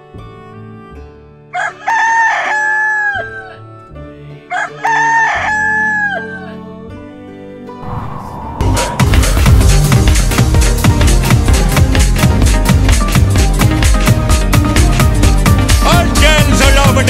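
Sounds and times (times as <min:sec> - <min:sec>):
soft background music: 0:00.0 - 0:08.0
rooster crowing: 0:01.5 - 0:03.6, 0:04.5 - 0:06.6.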